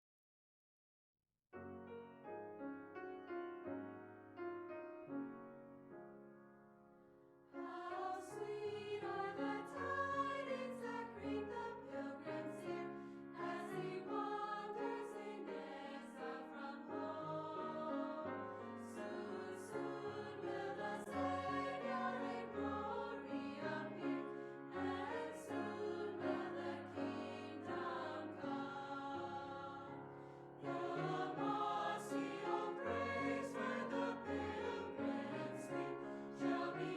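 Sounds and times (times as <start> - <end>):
choir singing: 7.6 - 36.9.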